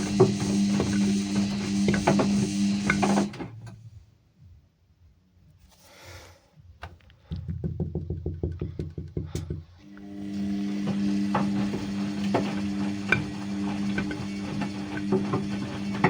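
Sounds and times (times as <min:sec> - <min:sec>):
washing machine running: 0:00.0 - 0:03.8, 0:09.8 - 0:16.0.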